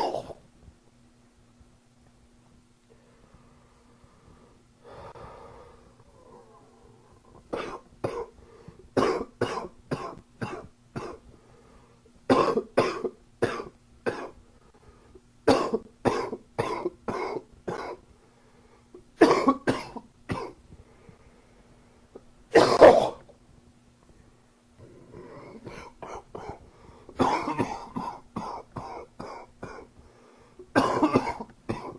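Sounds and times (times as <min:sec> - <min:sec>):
man coughing: 0:00.0 - 0:00.4, 0:07.6 - 0:08.4, 0:09.0 - 0:11.2, 0:12.3 - 0:14.4, 0:15.5 - 0:18.0, 0:19.2 - 0:20.6, 0:22.5 - 0:23.2, 0:25.6 - 0:26.6, 0:27.2 - 0:29.9, 0:30.7 - 0:31.9.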